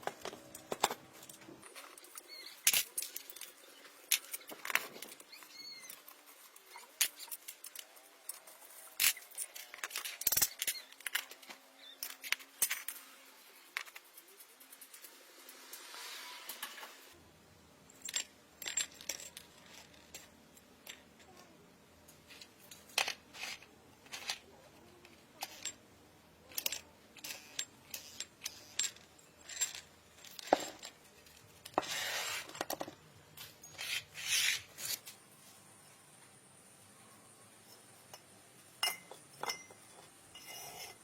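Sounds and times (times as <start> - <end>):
metal tools clinking: 0.0 - 12.9, 17.9 - 21.3, 26.4 - 36.1, 37.5 - 41.0.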